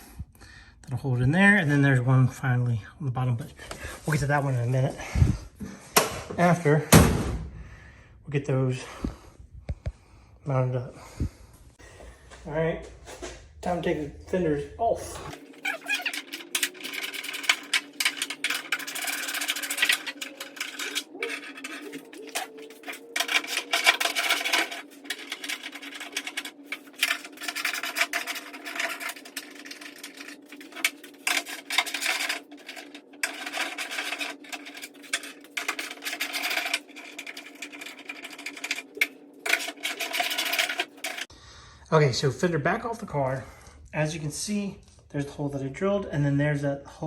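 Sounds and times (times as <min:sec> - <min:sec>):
rubbing and scraping: 0:13.2 - 0:41.3.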